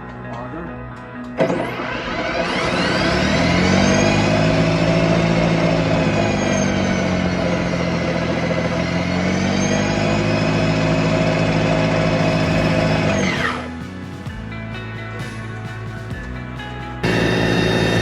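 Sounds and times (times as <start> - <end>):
snow blower motor whine: 1.4 - 13.8, 17.0 - 18.0.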